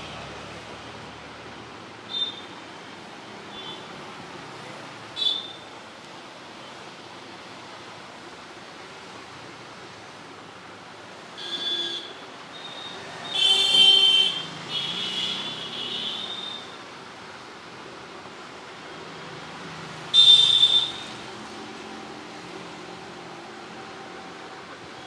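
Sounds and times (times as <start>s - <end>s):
road traffic hum: 0.0s - 25.0s.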